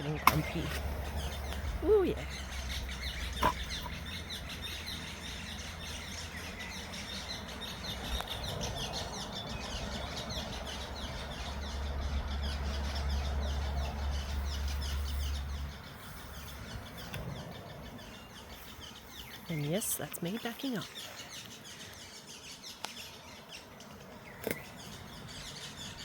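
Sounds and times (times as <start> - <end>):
low rumble: 0.0 - 18.4
small birds chirping: 0.0 - 26.0.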